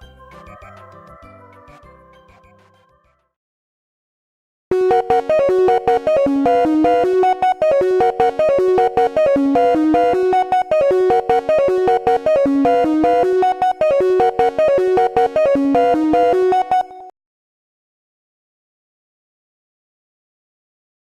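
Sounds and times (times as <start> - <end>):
bright plucky melody: 4.7 - 17.1.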